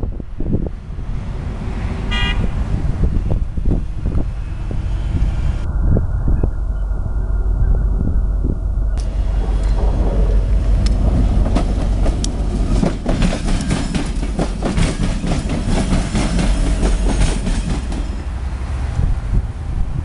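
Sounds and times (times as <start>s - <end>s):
freight train rumbling past: 0.0s - 20.0s
wheels clacking over rail joints: 9.0s - 18.9s.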